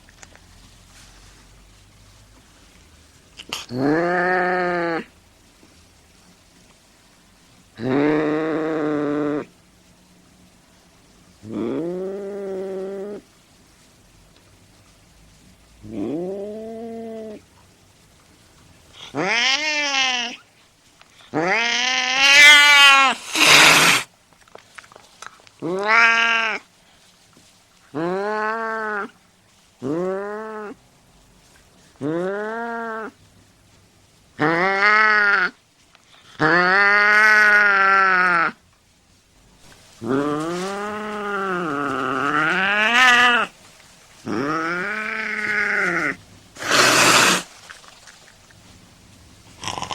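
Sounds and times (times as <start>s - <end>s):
cat hissing: 18.9s - 20.4s, 21.3s - 24.1s, 44.2s - 47.6s, 49.6s - 49.9s
cat yowling: 19.1s - 20.4s, 21.4s - 24.1s, 25.6s - 26.6s, 40.0s - 43.5s, 44.3s - 47.4s.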